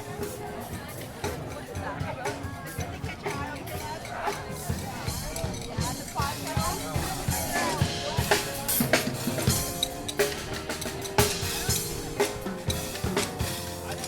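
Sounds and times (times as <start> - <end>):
held instrument notes: 2.8 - 14.0
bass drum and snare hits: 4.8 - 14.0.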